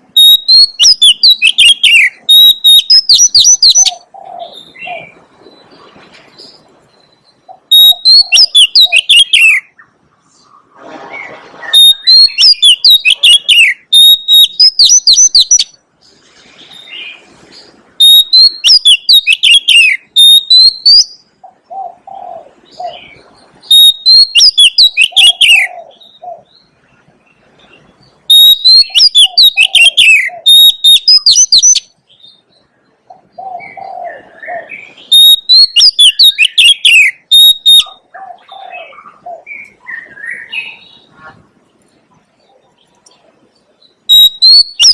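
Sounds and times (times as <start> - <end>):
bird singing high whistles: 0.2 - 4.0, 7.1 - 9.7, 11.7 - 15.8, 18.0 - 21.2, 23.6 - 26.2, 28.3 - 31.9, 34.9 - 38.0, 44.1 - 44.9.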